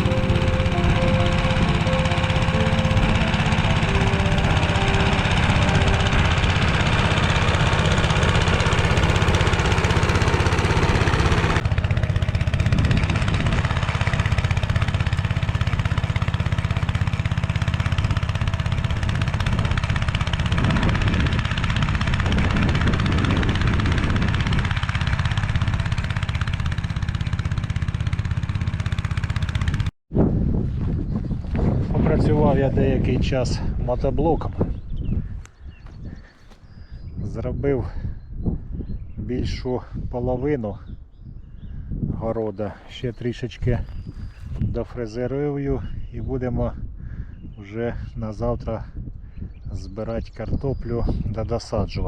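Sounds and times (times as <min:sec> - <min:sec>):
walk-behind tractor engine tilling: 0:00.0 - 0:29.9.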